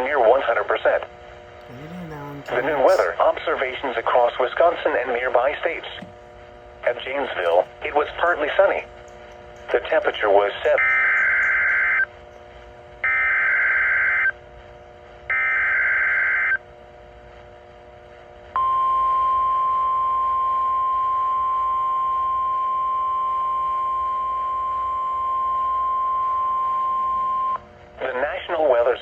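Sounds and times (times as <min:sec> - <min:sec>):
steady warning alarm tone: 0:08.7 - 0:14.4.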